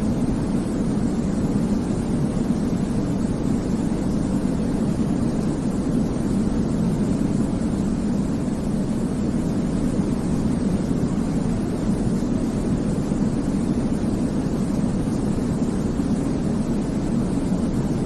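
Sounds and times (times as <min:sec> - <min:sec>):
deep white noise hiss: 0:00.0 - 0:18.0.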